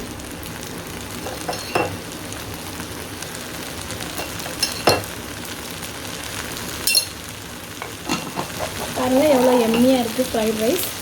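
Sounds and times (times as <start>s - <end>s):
rice sizzling in a pan: 0.0s - 11.0s
utensil knocking on pan: 7.8s - 10.0s.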